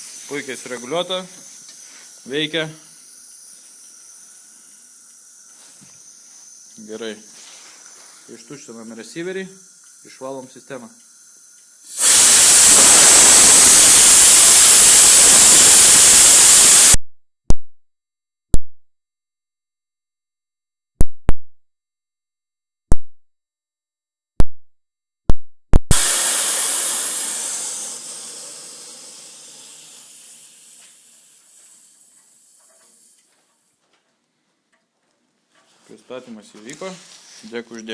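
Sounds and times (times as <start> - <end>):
compressed air hissing: 0.0 - 17.0, 25.9 - 33.3
sharp air blasts: 11.9 - 17.0, 25.8 - 31.0.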